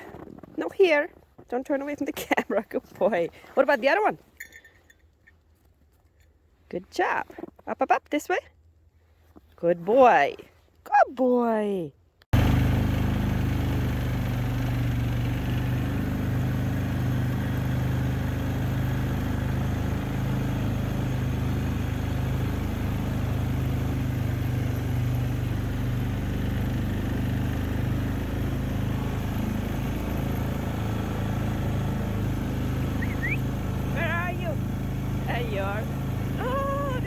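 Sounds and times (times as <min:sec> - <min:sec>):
vehicle engine humming: 0:12.3 - 0:37.0.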